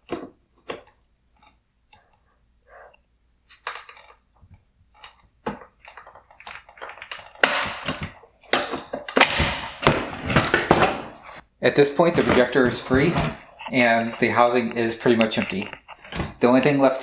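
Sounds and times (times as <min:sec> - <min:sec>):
plastic rattling and scraping: 0:00.0 - 0:17.0
plastic parts clicking: 0:03.5 - 0:11.4, 0:12.1 - 0:17.0.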